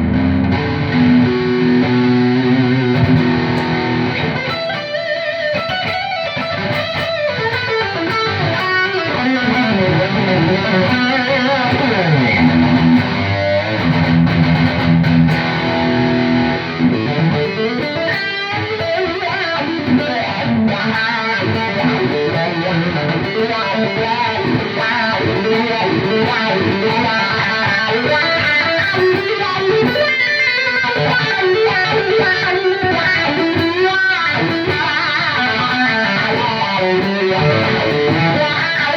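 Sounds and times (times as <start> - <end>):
electric guitar lead lines: 0.0 - 38.9.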